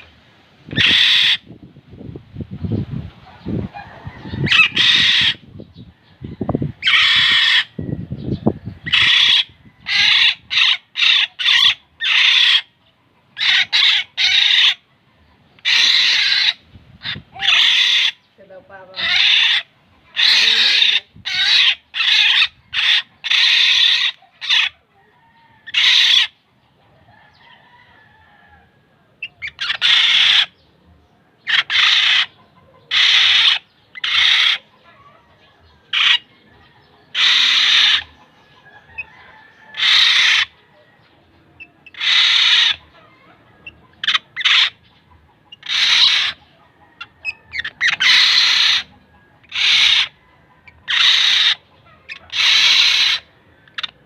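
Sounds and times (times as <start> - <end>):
bird giving harsh calls: 0.7 - 1.6, 4.1 - 5.5, 6.8 - 7.8, 8.8 - 12.8, 13.4 - 14.8, 15.6 - 24.8, 25.7 - 26.4, 29.2 - 30.6, 31.4 - 35.3, 35.9 - 36.3, 37.1 - 40.6, 41.6 - 54.0.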